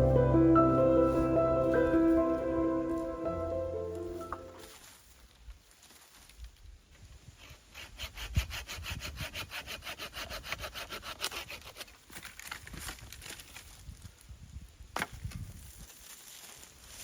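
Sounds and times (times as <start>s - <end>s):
hand saw cutting wood: 7.4s - 12.0s.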